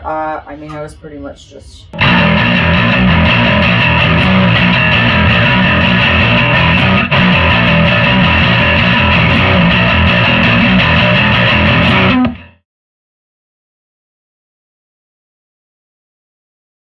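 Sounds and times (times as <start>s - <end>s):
distorted electric bass: 2.0s - 12.6s.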